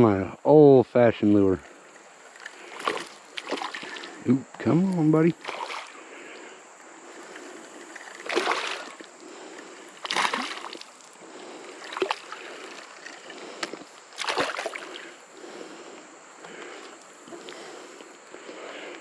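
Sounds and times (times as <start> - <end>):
fish splashing at water surface: 2.3 - 4.2, 5.4 - 6.0, 7.8 - 9.1, 10.0 - 11.1, 11.7 - 15.1.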